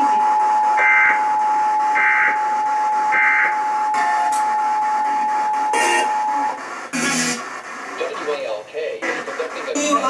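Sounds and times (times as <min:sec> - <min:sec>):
two-tone alarm: 0:00.0 - 0:07.6
buzzy digital data tones: 0:03.1 - 0:08.2.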